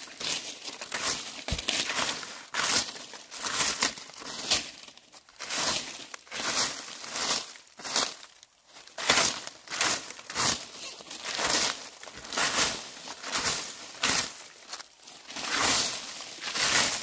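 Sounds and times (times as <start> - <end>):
broom sweeping dry leaves: 0.0 - 17.0.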